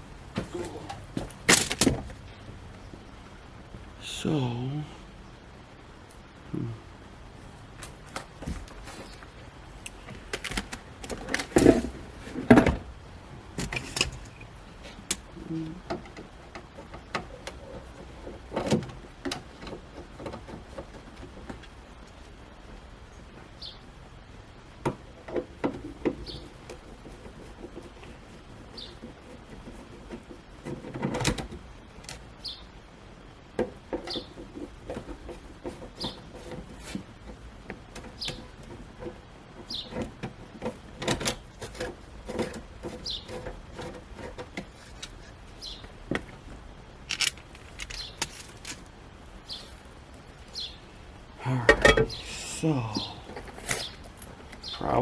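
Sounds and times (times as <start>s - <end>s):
bird chirping: 23.6s - 23.9s, 26.2s - 26.6s, 28.7s - 29.1s, 32.4s - 32.8s, 39.6s - 40.0s, 42.9s - 43.4s, 45.6s - 45.9s, 47.9s - 48.3s, 49.4s - 49.8s, 50.5s - 51.0s, 52.0s - 55.0s
rustling scrape: 34.5s - 37.2s, 41.5s - 45.5s, 47.1s - 48.9s.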